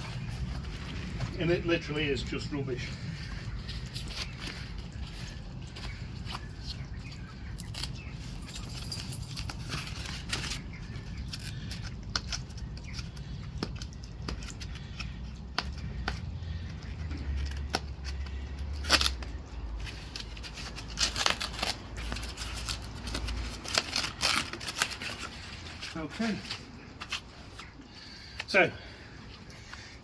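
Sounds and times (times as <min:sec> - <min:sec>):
packaging rustling and crinkling: 0:03.0 - 0:12.6, 0:17.3 - 0:28.5.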